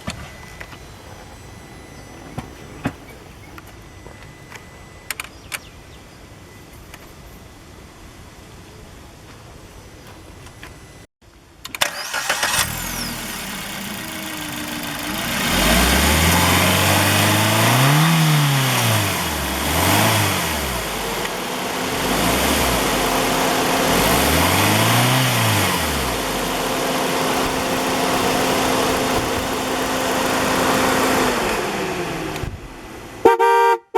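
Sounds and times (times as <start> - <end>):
engine cranking clicks: 11.6 - 31.7
car engine revving and idling: 12.0 - 32.7.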